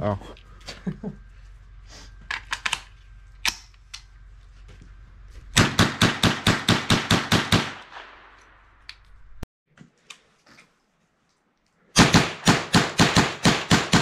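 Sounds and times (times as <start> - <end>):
rifle shots fired rapidly: 5.6 - 8.3, 12.0 - 14.0.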